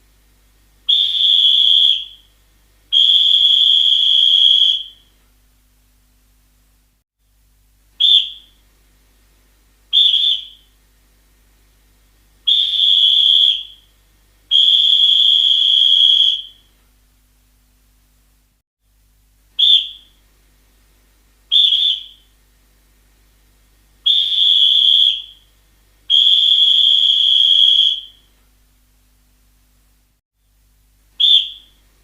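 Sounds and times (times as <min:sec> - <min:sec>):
referee's whistle blasts: 0:26.1 - 0:28.2, 0:31.2 - 0:31.8.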